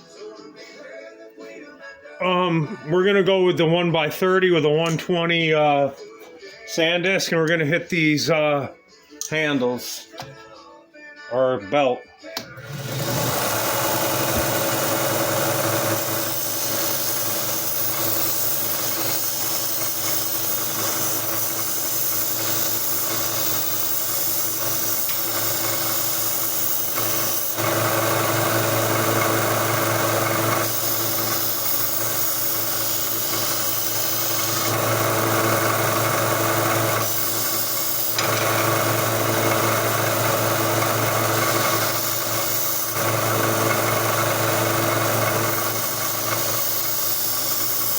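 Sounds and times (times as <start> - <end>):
belt sander motor hum: 12.6 - 47.9.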